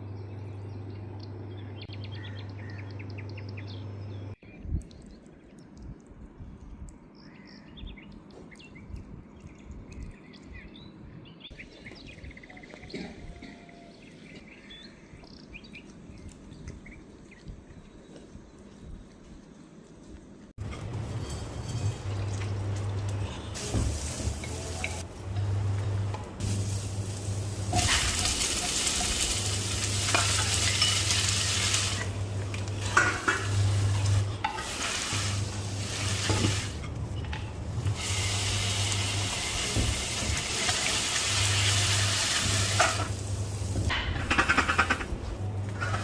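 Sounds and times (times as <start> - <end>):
food sizzling in oil: 20.6 - 37.0, 37.8 - 43.9.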